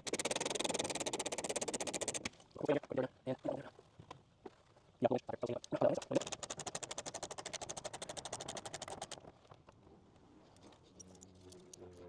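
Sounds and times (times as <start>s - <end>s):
socket ratchet clicking: 0.0s - 2.2s, 6.0s - 9.2s.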